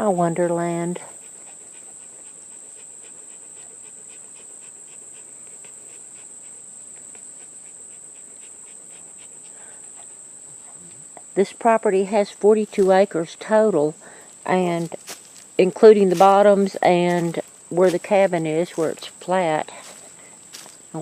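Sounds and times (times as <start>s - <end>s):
high-pitched insect chorus: 0.0s - 21.0s
dog panting: 1.0s - 11.0s.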